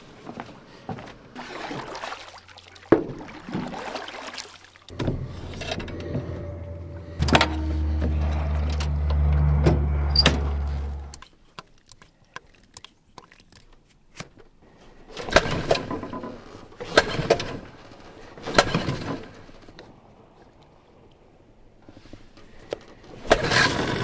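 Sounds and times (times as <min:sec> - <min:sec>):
motor humming: 0:04.9 - 0:11.2
rough scraping: 0:04.9 - 0:11.2.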